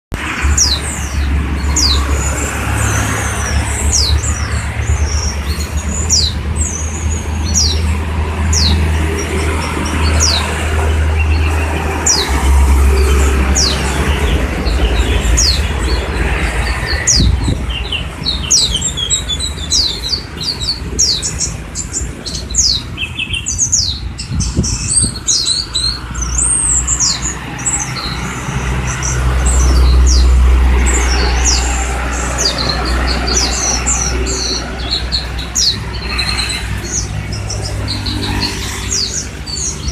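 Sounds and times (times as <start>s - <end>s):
young songbirds chirping: 0.2s - 39.9s.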